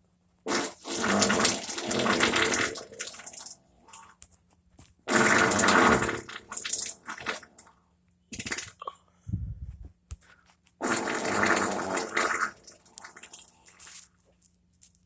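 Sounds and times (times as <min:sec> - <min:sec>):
person farting: 0:00.4 - 0:03.0, 0:05.0 - 0:06.4, 0:08.3 - 0:09.0, 0:10.8 - 0:13.4.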